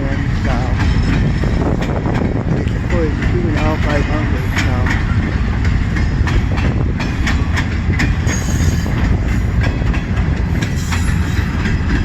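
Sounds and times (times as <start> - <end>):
freight train cars rumbling past: 0.0 - 12.0
wheels clacking over rail joints: 0.0 - 12.0
high wheel squeal: 8.3 - 9.0.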